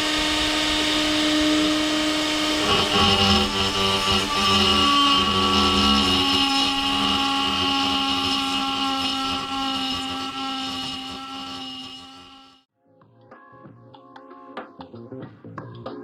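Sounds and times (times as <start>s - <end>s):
die grinder whining: 0.0s - 12.7s.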